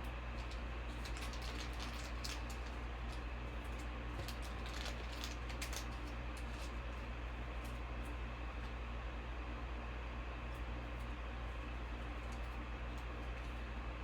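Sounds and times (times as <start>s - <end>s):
cards clicking and rustling: 0.4s - 6.8s.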